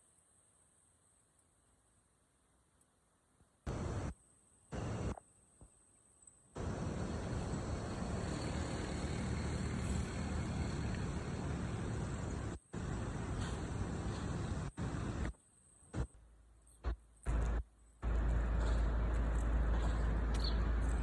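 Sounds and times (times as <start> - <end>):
rushing rumbling travel noise: 3.7 - 4.1, 6.6 - 21.0.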